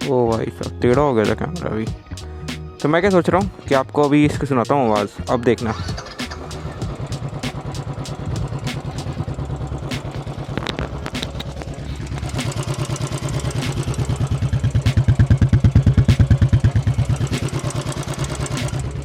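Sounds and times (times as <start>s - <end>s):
motorcycle engine idling: 5.6s - 19.0s.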